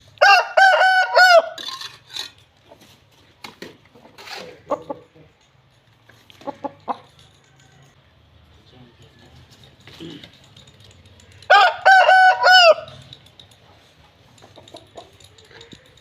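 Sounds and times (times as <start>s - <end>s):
rooster crowing: 0.2s - 1.6s, 7.2s - 8.0s, 11.5s - 13.0s.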